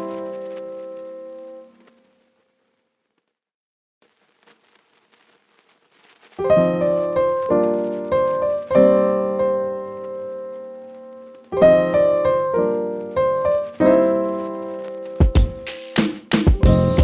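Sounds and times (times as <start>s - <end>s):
piano chords ringing: 0.0s - 1.7s, 6.4s - 15.9s, 16.5s - 17.0s.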